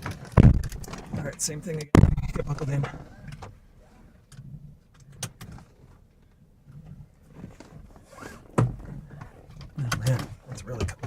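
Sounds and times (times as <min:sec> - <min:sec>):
car interior rumble: 0:00.0 - 0:11.0
loud thud: 0:00.4 - 0:00.9, 0:01.9 - 0:03.1.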